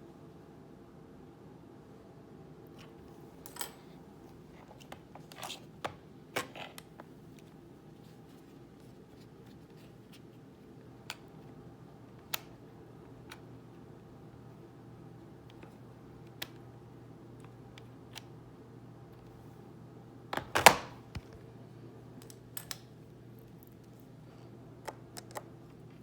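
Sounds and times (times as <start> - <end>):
faint low hum: 0.0 - 26.0.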